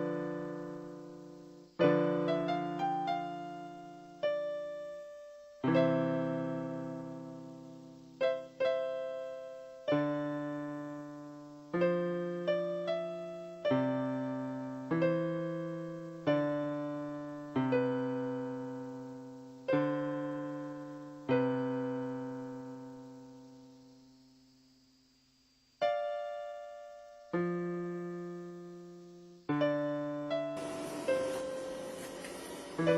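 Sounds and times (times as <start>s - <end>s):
soft piano chords: 0.0s - 24.3s, 25.8s - 32.9s.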